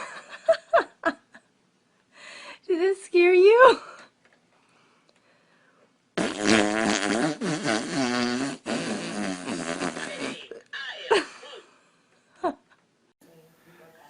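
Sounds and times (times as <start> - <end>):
long loud fart: 6.2 - 10.6.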